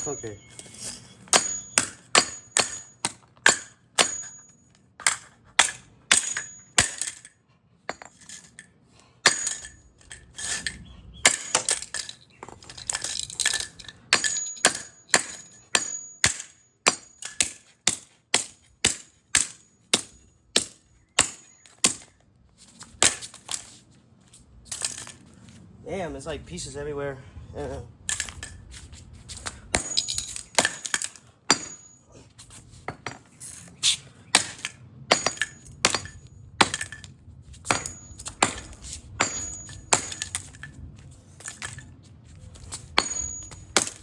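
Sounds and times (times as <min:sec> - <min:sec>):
hammer smashing headphones: 0:42.9 - 0:44.0.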